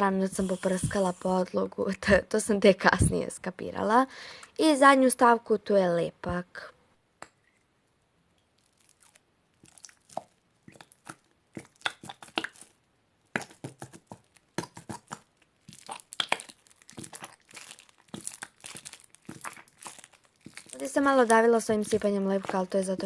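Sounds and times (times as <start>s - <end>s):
glue bottle crackling clicks: 8.5s - 23.0s.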